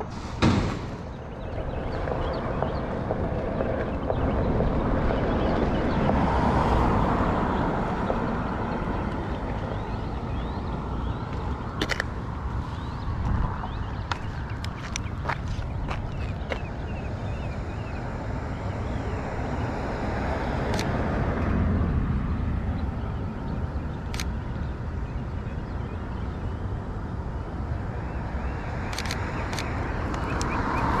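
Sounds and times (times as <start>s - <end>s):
car passing: 0.0s - 31.0s
street traffic rumble: 0.0s - 31.0s
sharp clicks: 20.7s - 21.0s, 24.1s - 24.4s, 28.9s - 30.6s.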